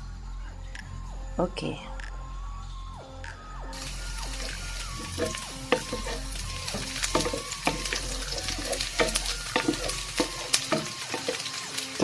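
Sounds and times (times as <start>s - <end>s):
oil crackling and popping: 3.7s - 12.0s
oil sizzling in a pan: 3.8s - 12.0s.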